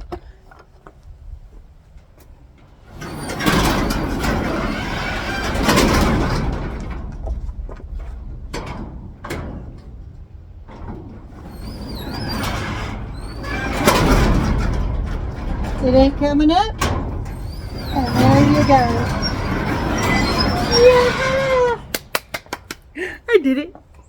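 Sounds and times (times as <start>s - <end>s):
garage door rattling and banging: 2.0s - 22.9s.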